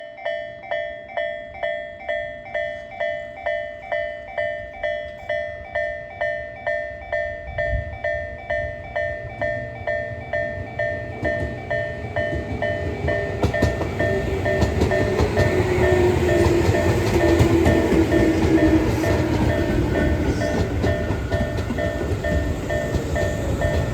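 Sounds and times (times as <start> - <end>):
level-crossing warning bell ringing: 0.0 - 23.9
electric train rumble: 1.5 - 23.9
train wheels clacking over rail joints: 10.8 - 23.9.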